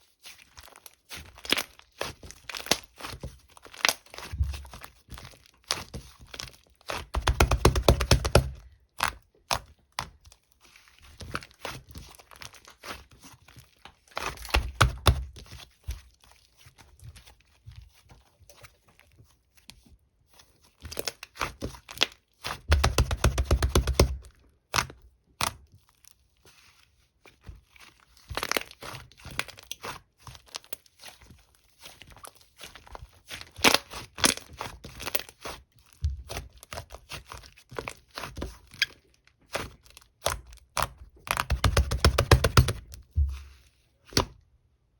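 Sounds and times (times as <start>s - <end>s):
slime crackling with popping bubbles: 0.7s - 10.3s.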